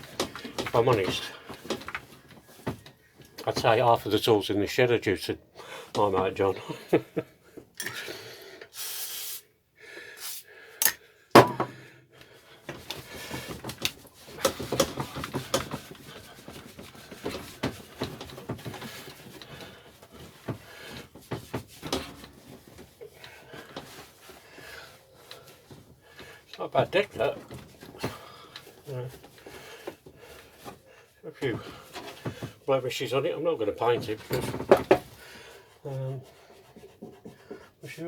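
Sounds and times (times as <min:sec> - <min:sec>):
scraping and rubbing lawnmower deck: 0:12.7 - 0:30.9.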